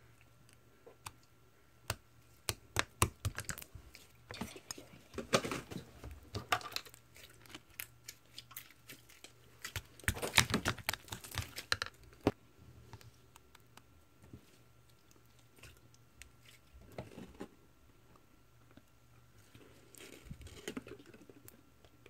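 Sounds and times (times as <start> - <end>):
slime squished by hand: 7.1 - 12.2.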